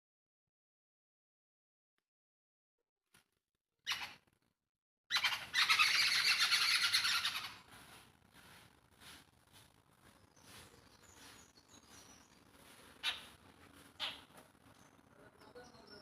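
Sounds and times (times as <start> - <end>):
birds calling harshly: 3.9 - 4.2, 5.1 - 7.8, 10.0 - 16.0
harsh chattering squawk: 3.9 - 4.2, 5.1 - 7.6, 13.0 - 13.4, 14.0 - 14.3.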